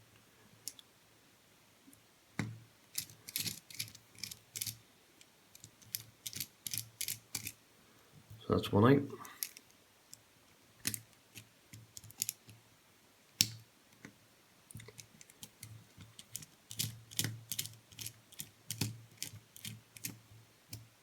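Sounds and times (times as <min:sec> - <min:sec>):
screwdriver clicking and scraping: 0:03.0 - 0:04.8, 0:05.6 - 0:07.6.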